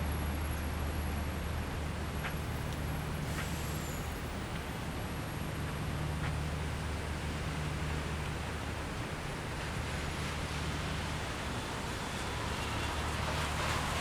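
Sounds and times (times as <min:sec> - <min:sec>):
rain hissing on street: 0:05.4 - 0:14.0.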